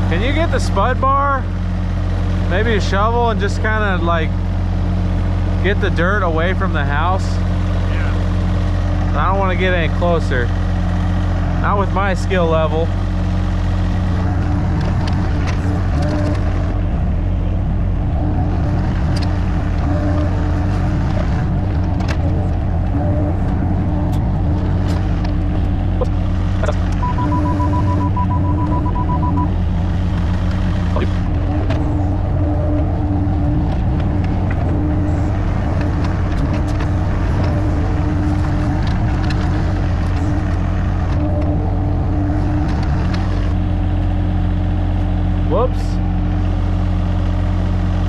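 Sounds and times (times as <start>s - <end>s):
diesel digger engine running: 0.0s - 48.0s
high whine: 11.6s - 46.1s.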